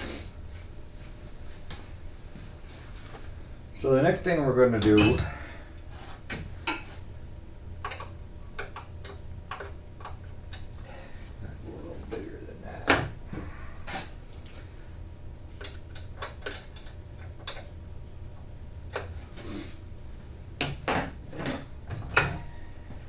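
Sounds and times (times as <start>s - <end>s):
steady low hum: 0.0s - 23.0s
tools clicking and knocking: 4.8s - 5.4s.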